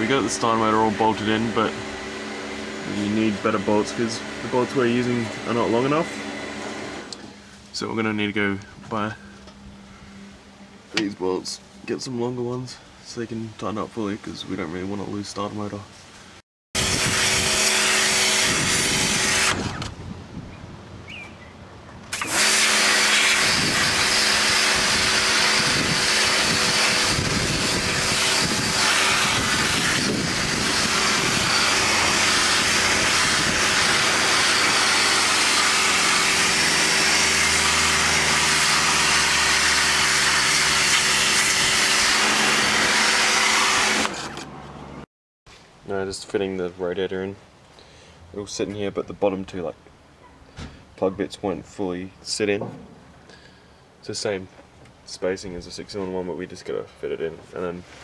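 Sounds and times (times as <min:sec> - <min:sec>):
machine humming: 0:00.0 - 0:07.2, 0:22.1 - 0:45.0.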